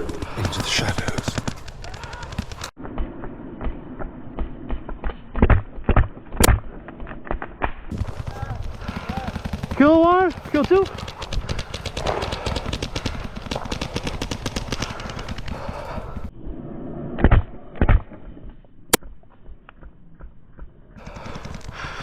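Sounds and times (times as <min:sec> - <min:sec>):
paintball marker rapid firing: 0:00.0 - 0:02.7, 0:07.9 - 0:16.3, 0:21.0 - 0:22.0.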